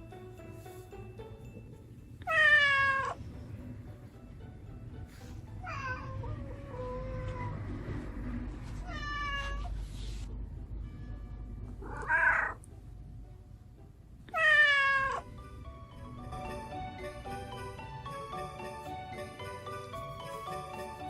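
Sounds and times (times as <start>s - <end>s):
light chiming music: 0.0s - 6.3s, 10.7s - 11.8s, 15.0s - 21.0s
cat meowing: 2.2s - 3.2s, 5.6s - 7.6s, 8.8s - 9.7s, 11.8s - 12.6s, 14.3s - 15.3s.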